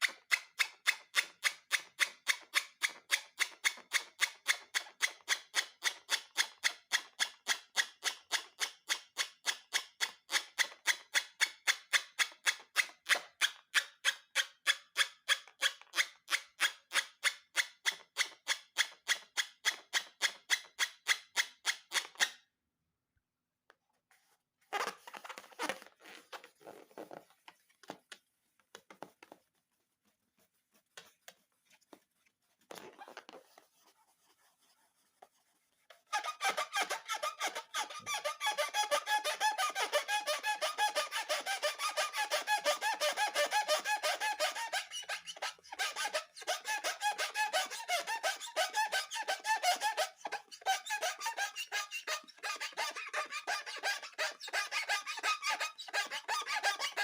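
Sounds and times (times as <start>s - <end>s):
balloon rustles: 24.1s - 36.2s
rubber balloons squeaking: 24.7s - 28.1s, 32.7s - 33.6s, 36.0s - 57.0s.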